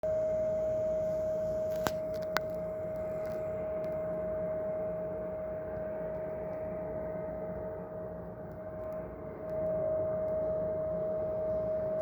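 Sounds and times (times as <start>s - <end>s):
steady single-pitched hum: 0.0s - 12.0s.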